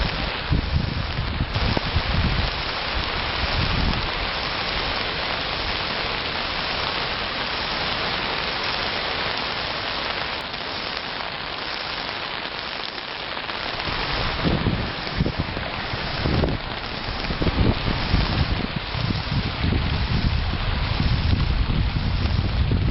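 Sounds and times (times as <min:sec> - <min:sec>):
wind buffeting microphone: 0:00.0 - 0:08.1, 0:13.7 - 0:22.9
heavy rain hissing: 0:00.0 - 0:22.9.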